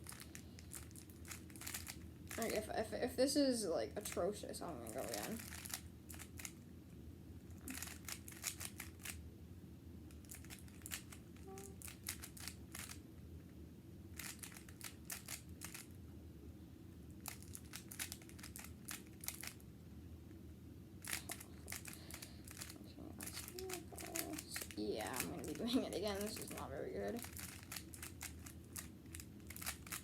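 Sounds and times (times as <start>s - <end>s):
puzzle cube plastic clicks: 0.1s - 2.0s, 5.1s - 6.5s, 7.6s - 9.2s, 10.1s - 13.0s, 14.2s - 15.9s, 17.2s - 19.6s, 21.0s - 26.6s, 27.2s - 30.0s.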